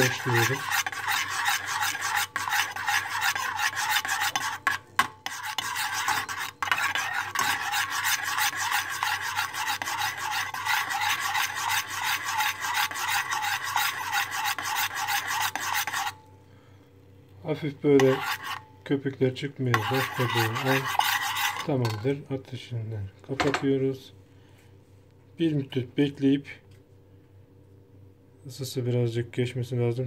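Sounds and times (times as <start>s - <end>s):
utensil scraping a pot: 0.0s - 16.2s, 18.0s - 18.6s, 19.7s - 22.1s.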